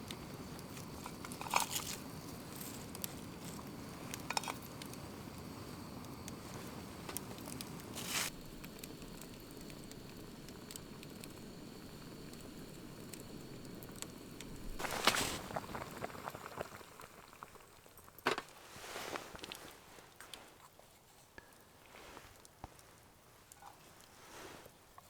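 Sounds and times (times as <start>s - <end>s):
food bubbling in a pot: 0.0s - 19.9s.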